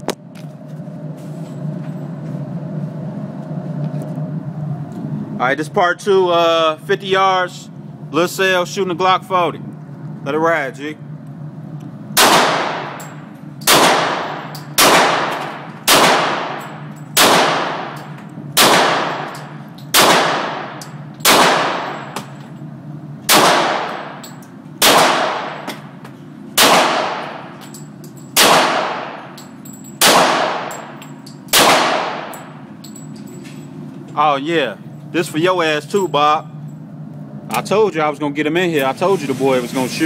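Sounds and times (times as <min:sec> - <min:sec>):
pistol shots with echo: 0:12.2 - 0:13.0, 0:13.6 - 0:18.0, 0:18.6 - 0:22.1, 0:23.3 - 0:24.2, 0:24.8 - 0:25.7, 0:26.6 - 0:27.5, 0:28.4 - 0:29.2, 0:30.0 - 0:30.9, 0:31.5 - 0:32.4.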